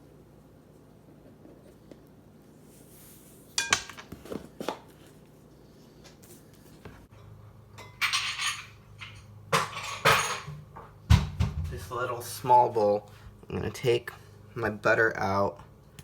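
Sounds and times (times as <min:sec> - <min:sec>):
dishes and utensils clattering: 0:07.8 - 0:10.9.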